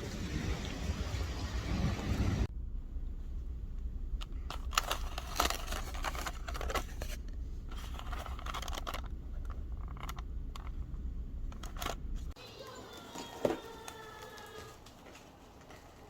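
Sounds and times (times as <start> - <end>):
steady low hum: 0.0 - 12.4.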